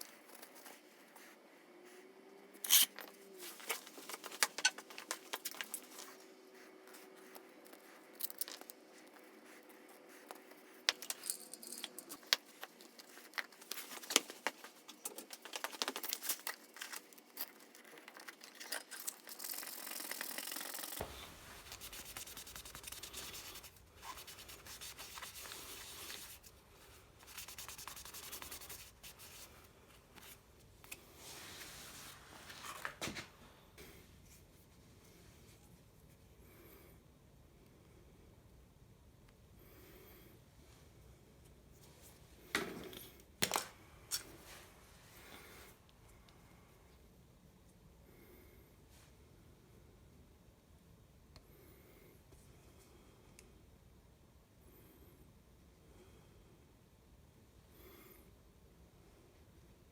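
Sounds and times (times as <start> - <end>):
rubbing and scraping on inner tube: 12.5 - 26.5.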